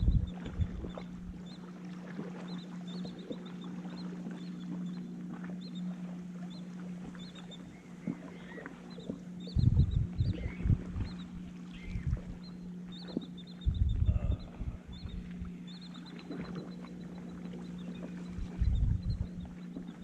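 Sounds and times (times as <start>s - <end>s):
low motor hum: 0.0s - 20.0s
small bird chirping: 7.2s - 20.0s.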